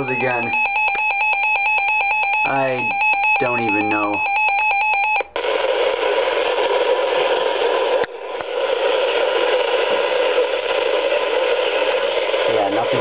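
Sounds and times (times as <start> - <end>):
radio static hiss: 0.0 - 0.6, 5.4 - 13.0
weather radio alert beeping: 0.0 - 5.2.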